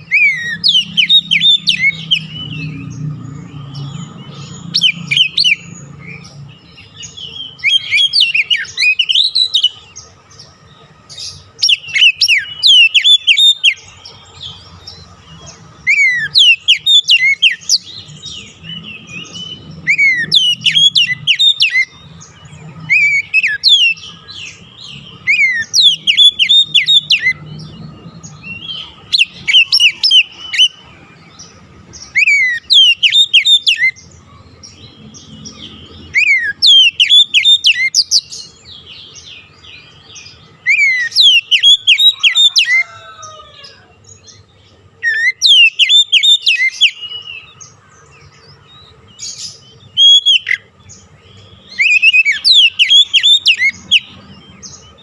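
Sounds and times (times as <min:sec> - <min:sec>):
bird singing whistled phrases: 0:00.0 - 0:03.0, 0:03.8 - 0:09.8, 0:11.6 - 0:13.8, 0:15.8 - 0:22.0, 0:22.9 - 0:27.5, 0:32.1 - 0:34.0, 0:35.7 - 0:38.5, 0:40.6 - 0:43.0, 0:45.0 - 0:47.6, 0:49.4 - 0:50.7, 0:51.5 - 0:54.2.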